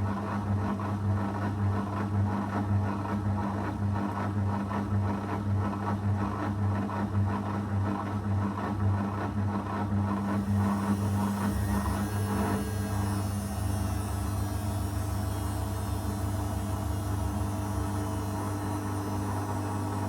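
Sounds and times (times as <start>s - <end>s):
washing machine throbbing hum: 0.0s - 20.0s
washing machine churning: 8.4s - 20.0s.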